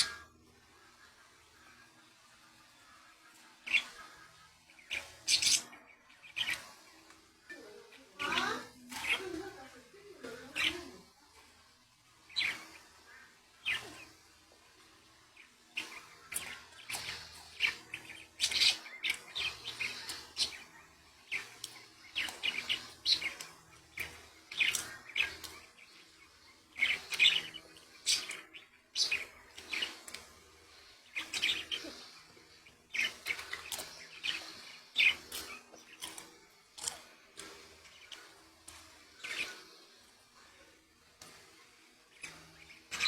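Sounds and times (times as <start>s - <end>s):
budgerigars chirping: 3.6s - 6.8s, 12.3s - 14.2s, 15.3s - 36.2s.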